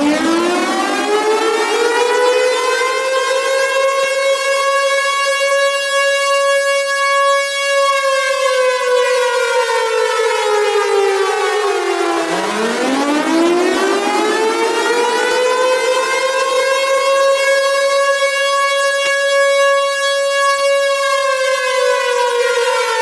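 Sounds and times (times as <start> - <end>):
warning siren wailing: 0.0 - 23.0.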